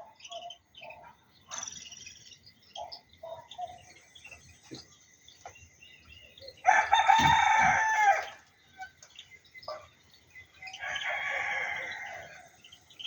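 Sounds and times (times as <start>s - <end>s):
bird calls and clucks: 0.0s - 13.0s
rooster crowing: 6.6s - 8.4s, 10.7s - 12.6s.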